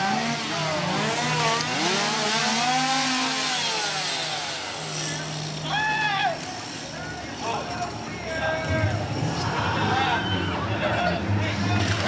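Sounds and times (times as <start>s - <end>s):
chainsaws revving: 0.0s - 8.1s.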